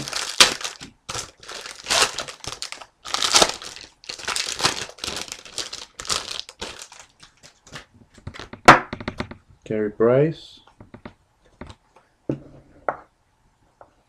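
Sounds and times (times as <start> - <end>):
wrapper crinkling and rustling: 0.0 - 8.4.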